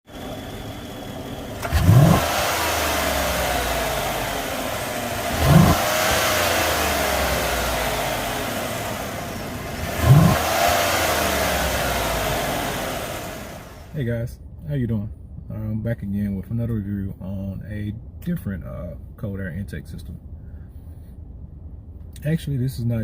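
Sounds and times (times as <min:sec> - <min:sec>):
car engine revving and idling: 0:00.1 - 0:14.0.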